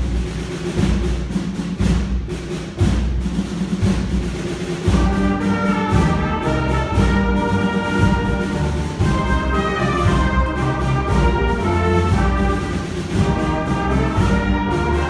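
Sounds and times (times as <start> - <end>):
low drum beats: 0.0 - 15.0
brass section chords: 4.9 - 15.0.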